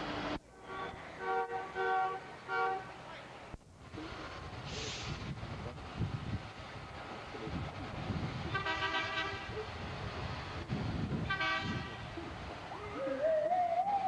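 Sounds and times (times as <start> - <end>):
low rumble of traffic: 0.0 - 14.0
vehicle horn blasts: 0.6 - 2.9, 8.5 - 9.5, 11.3 - 12.1.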